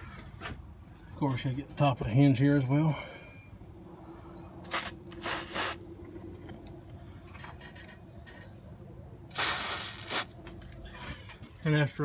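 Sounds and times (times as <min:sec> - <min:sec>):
aerosol spray hissing: 0:04.7 - 0:05.8, 0:09.3 - 0:10.4.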